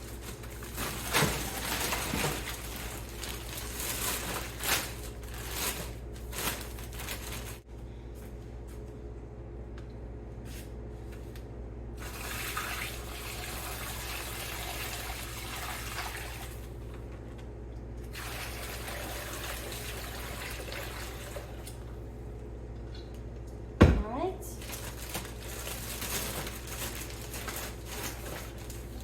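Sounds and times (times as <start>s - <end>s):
liquid pouring into a bag: 12.0s - 16.6s, 18.1s - 21.6s.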